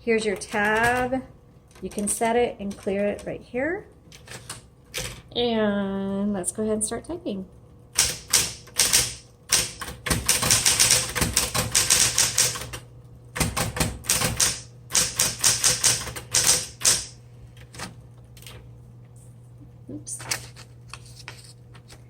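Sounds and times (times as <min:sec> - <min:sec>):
typewriter motor hum: 0:07.9 - 0:18.6
typewriter keystroke clicks: 0:08.0 - 0:12.8, 0:13.4 - 0:18.6.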